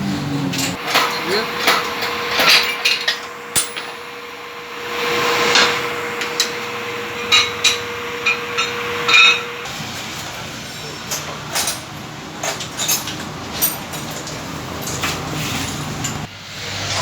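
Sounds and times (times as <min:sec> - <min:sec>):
metal tools tapping engine parts: 0:00.5 - 0:04.3, 0:05.5 - 0:09.6, 0:11.1 - 0:16.3.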